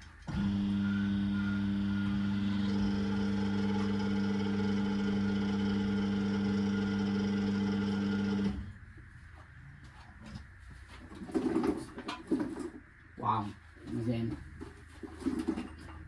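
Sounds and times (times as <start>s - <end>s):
hydraulic pump humming: 0.0s - 8.8s.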